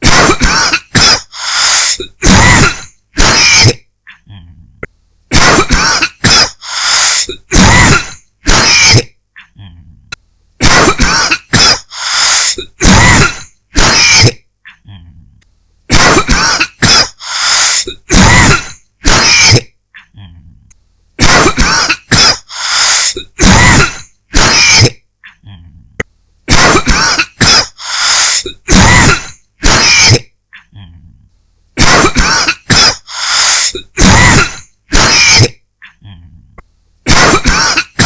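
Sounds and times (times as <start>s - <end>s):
person dry coughing: 0.0s - 3.9s, 5.3s - 9.2s, 10.6s - 14.5s, 15.9s - 19.8s, 21.2s - 25.0s, 26.5s - 30.3s, 31.8s - 35.6s, 37.1s - 38.0s.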